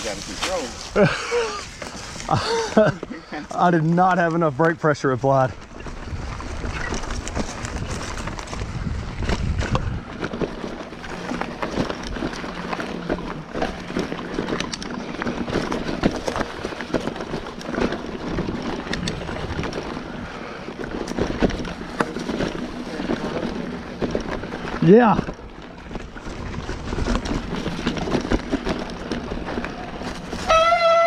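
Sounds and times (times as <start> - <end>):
bike clicks and rattles: 0.0 - 31.0
tyres running on dirt: 0.0 - 31.0
wind on microphone: 5.8 - 10.4.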